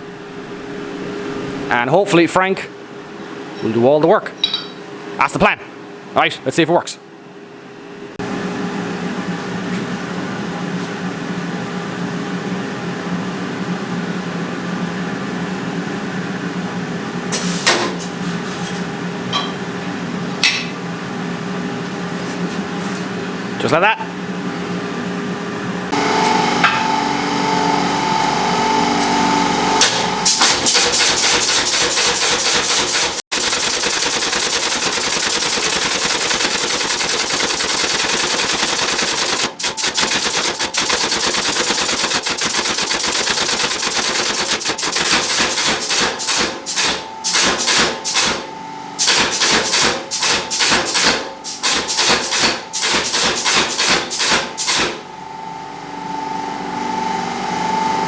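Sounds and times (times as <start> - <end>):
power hammer humming: 25.9 - 48.3.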